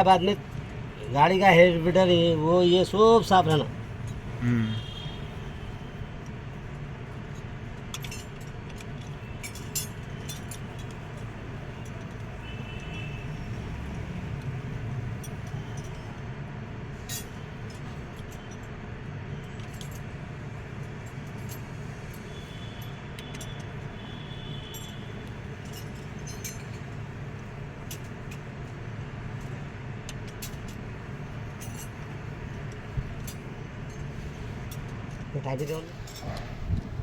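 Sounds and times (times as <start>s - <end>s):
metal tools clinking: 7.3s - 13.1s, 24.6s - 27.0s, 30.2s - 36.8s
steady low rumble: 35.9s - 37.0s.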